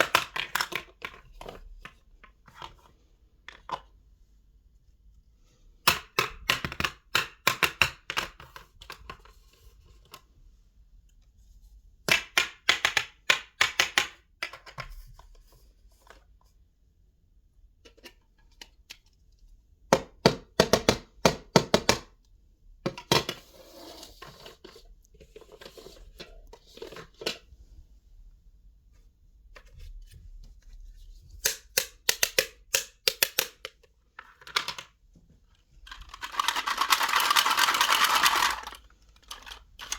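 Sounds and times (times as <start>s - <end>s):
plastic toys clicking and tapping: 0.0s - 1.9s, 5.9s - 9.3s, 12.0s - 15.0s, 31.4s - 35.0s, 35.8s - 39.9s
rustling and scraping: 23.3s - 28.1s.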